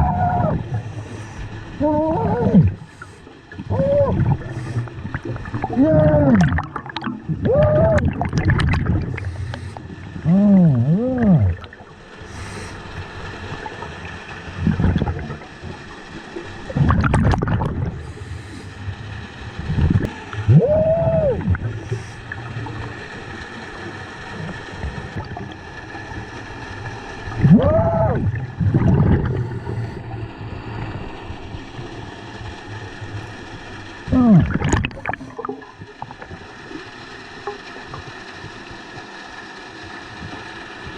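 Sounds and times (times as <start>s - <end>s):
exhaled breath bubbles underwater: 0.0s - 23.3s, 27.2s - 31.6s, 33.1s - 36.9s
underwater hiss: 0.4s - 2.0s, 2.6s - 6.0s, 8.6s - 10.7s, 11.5s - 13.6s, 17.8s - 19.3s, 21.4s - 23.0s, 28.3s - 31.1s.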